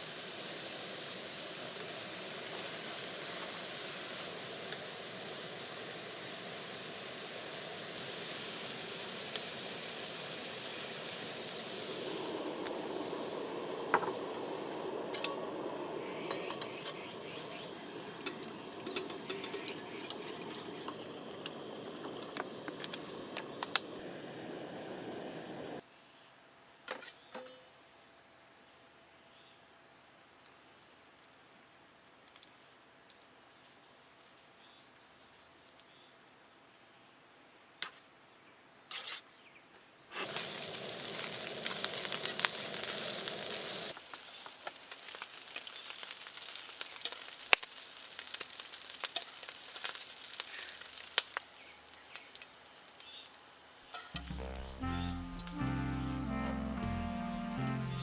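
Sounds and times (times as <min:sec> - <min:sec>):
food sizzling in a frying pan: 0:00.0 - 0:25.8, 0:40.1 - 0:58.0
high-pitched insect drone: 0:11.9 - 0:25.8, 0:54.2 - 0:58.0.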